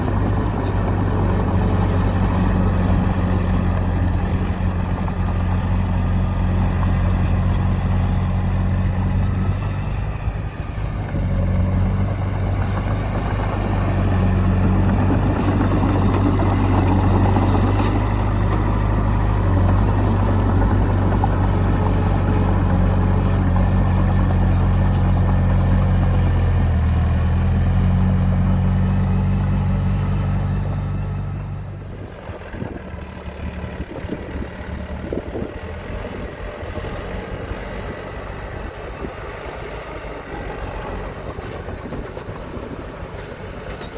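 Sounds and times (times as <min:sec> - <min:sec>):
heavy diesel engine running: 0:00.0 - 0:43.9.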